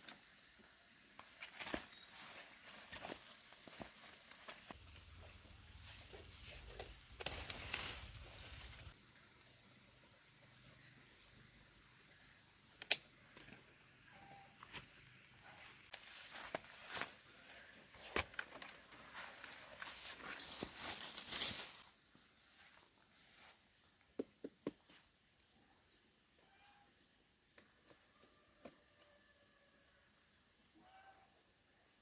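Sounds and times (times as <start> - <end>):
high-pitched insect drone: 1.4 - 21.9.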